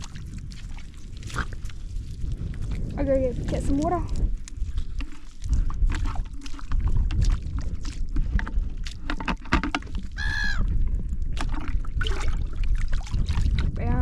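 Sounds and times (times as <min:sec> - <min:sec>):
bucket filling in creek: 0:00.0 - 0:02.8, 0:03.4 - 0:13.9
water splashing and sloshing: 0:00.0 - 0:14.0
wind rumble on microphone: 0:00.0 - 0:14.0
brief high-pitched call: 0:10.2 - 0:10.6.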